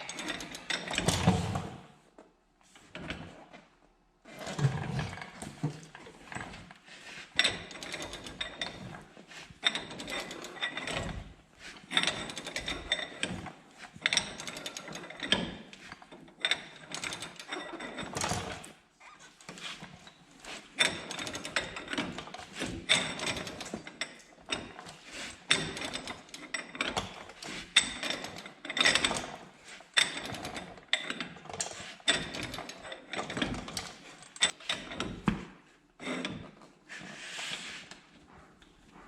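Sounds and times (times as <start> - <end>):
metallic clicks and clanks of tools: 0.0 - 1.7, 19.4 - 36.7.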